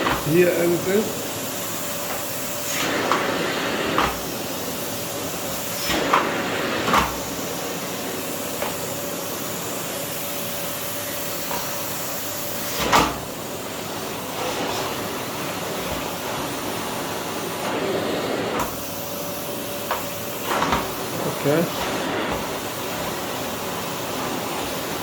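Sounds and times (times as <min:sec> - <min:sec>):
vacuum cleaner running: 0:00.0 - 0:25.0.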